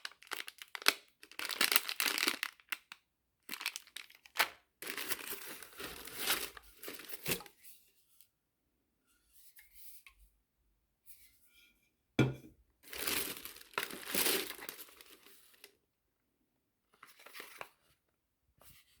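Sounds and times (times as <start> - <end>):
packaging crinkling and tearing: 0.0 - 7.5, 12.9 - 15.7.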